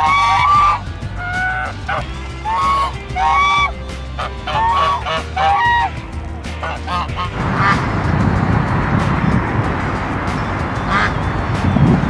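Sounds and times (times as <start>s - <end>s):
geese honking: 0.0s - 12.0s.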